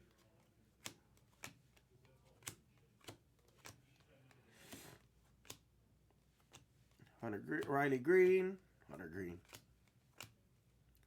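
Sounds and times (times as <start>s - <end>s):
cards clicking as flipped: 0.0s - 7.0s, 9.3s - 11.0s
card sliding swish: 4.5s - 5.0s.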